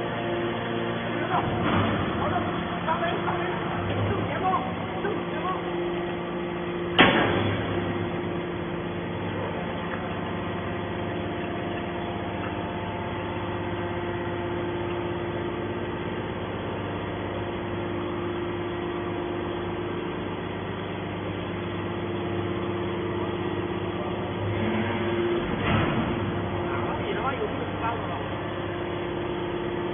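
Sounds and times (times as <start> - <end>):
hydraulic power unit humming: 0.0 - 29.9.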